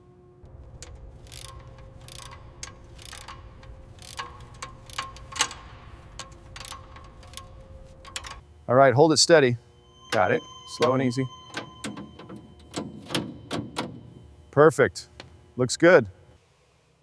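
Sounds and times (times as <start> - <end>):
low steady hum: 0.0 - 17.0
mechanical clicks and ticks: 0.6 - 8.4.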